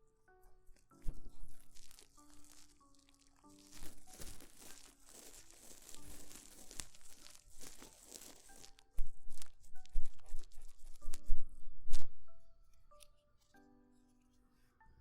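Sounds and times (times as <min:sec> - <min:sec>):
crinkly rustling: 0:00.0 - 0:14.8
soft background music: 0:00.0 - 0:15.0
scratching and scraping on microphone: 0:01.0 - 0:12.2.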